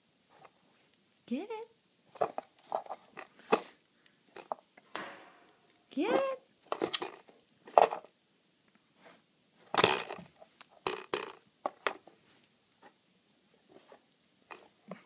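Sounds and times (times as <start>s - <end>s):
plastic toy knocking and clattering: 10.9s - 12.0s.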